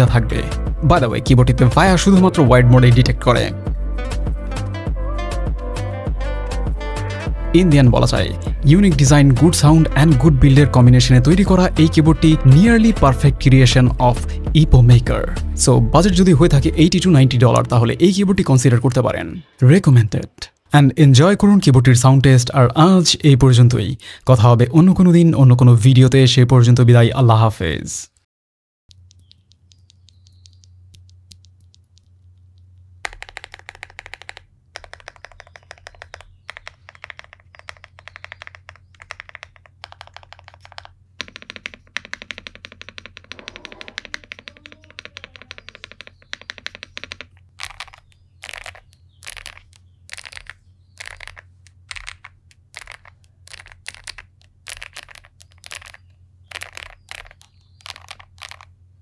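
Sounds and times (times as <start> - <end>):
mechanical keyboard typing: 28.9 - 58.7.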